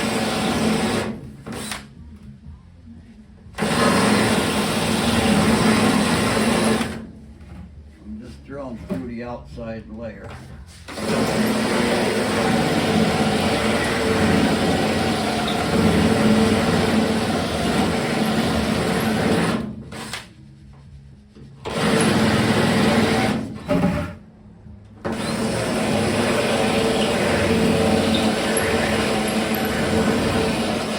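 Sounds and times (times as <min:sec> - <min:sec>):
electric drill drilling sheet metal: 0:00.0 - 0:01.8, 0:03.6 - 0:07.0, 0:10.9 - 0:20.2, 0:21.7 - 0:24.1, 0:25.1 - 0:30.9.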